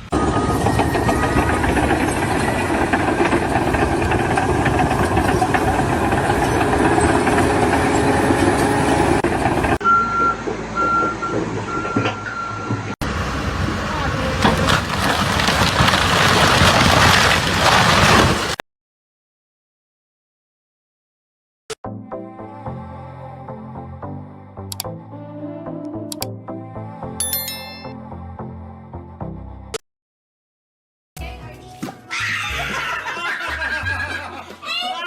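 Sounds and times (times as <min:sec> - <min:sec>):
low engine hum: 0:00.0 - 0:17.0
construction site machinery noise: 0:00.0 - 0:18.6
reversing alarm beeps: 0:09.8 - 0:12.8.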